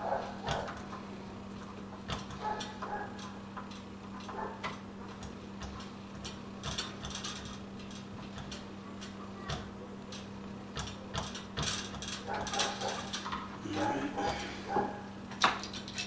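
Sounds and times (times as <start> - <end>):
steady low hum: 0.0 - 16.0
metal lock parts clicking: 2.0 - 13.5.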